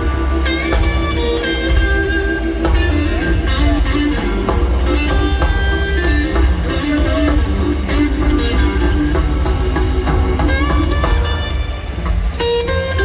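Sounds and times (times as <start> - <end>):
live blues band playing: 0.0 - 13.0.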